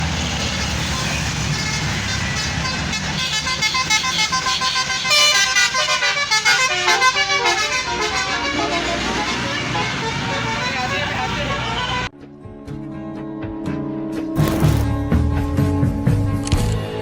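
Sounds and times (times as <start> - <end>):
bus rumbling past: 0.0 - 12.1
bus horn playing a tune: 0.2 - 12.1.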